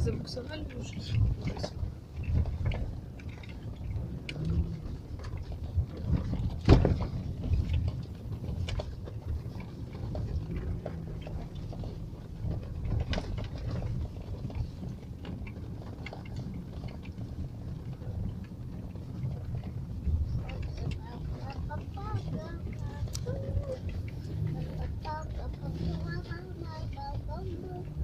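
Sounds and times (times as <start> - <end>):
car engine and tyres rumbling: 0.0 - 28.0.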